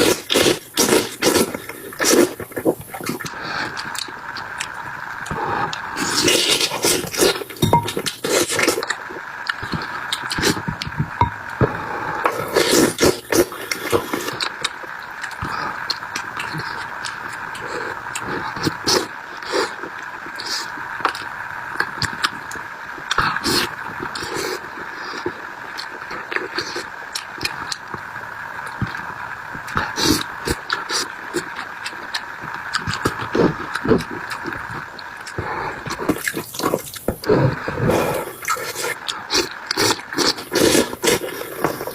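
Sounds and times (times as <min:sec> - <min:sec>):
chewing and crunching: 0:00.0 - 0:11.0, 0:29.6 - 0:41.9
steady background hiss: 0:00.0 - 0:41.9.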